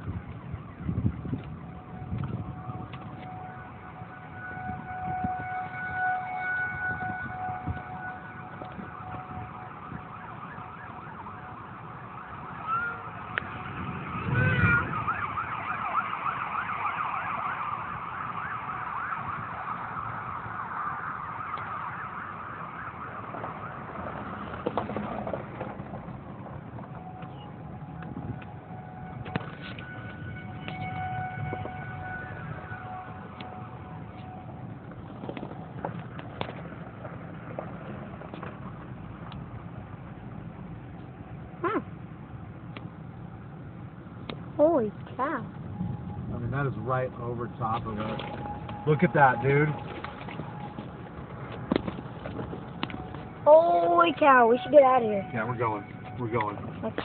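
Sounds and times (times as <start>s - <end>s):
steady low rumble: 0.0s - 16.9s
siren wailing: 0.0s - 36.8s, 44.6s - 57.0s.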